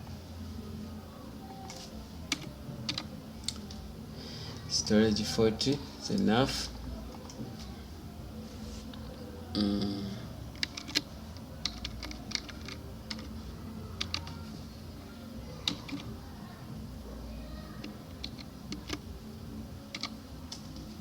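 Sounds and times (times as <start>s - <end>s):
computer keyboard key clicks: 10.6s - 13.3s, 17.8s - 19.0s, 19.9s - 20.6s.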